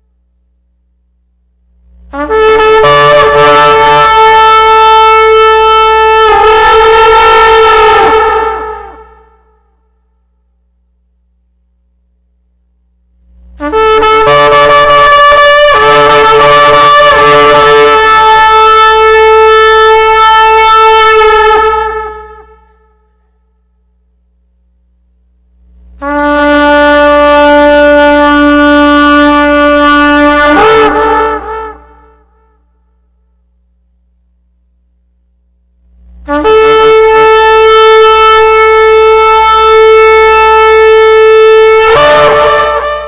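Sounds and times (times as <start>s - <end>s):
long horn blasts: 1.9s - 10.0s, 13.4s - 23.4s, 26.0s - 33.3s, 36.2s - 43.0s.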